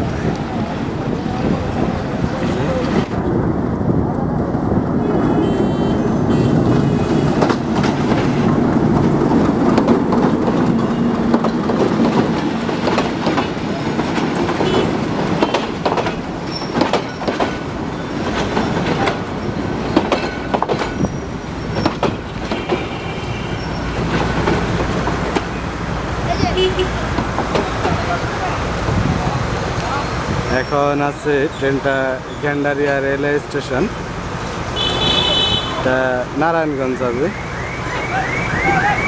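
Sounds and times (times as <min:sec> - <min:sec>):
wheels clacking over rail joints: 0:00.0 - 0:34.8
train rumbling: 0:00.0 - 0:39.0
high wheel squeals: 0:16.4 - 0:17.3, 0:20.9 - 0:24.2, 0:30.5 - 0:32.6.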